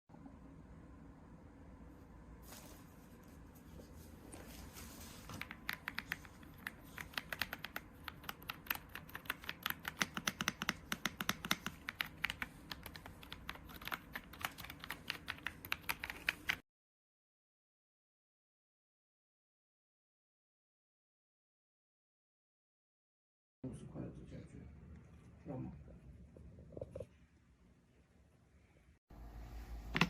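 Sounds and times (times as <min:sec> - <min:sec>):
mechanical keyboard typing: 0:05.4 - 0:16.6.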